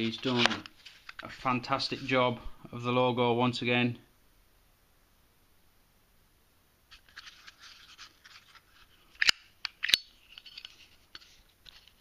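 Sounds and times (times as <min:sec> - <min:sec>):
metal lighter rubbing in hands: 0:07.0 - 0:12.0.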